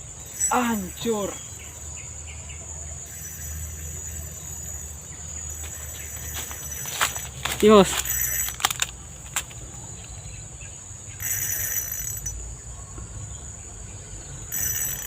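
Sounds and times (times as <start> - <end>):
insects shrilling: 0.0 - 10.4.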